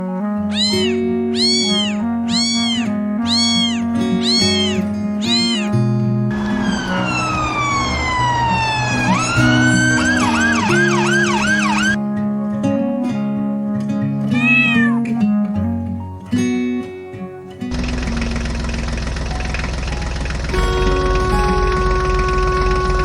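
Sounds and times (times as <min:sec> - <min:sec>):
background music: 0:00.0 - 0:17.8
cat meowing: 0:00.5 - 0:12.0, 0:14.3 - 0:15.1
siren wailing and yelping: 0:00.5 - 0:12.0, 0:14.3 - 0:15.0.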